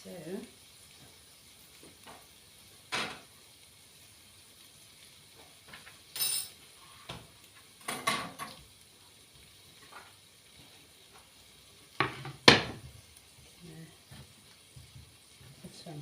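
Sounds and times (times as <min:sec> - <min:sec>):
dishes and utensils clinking: 0:05.7 - 0:06.6, 0:07.8 - 0:08.6.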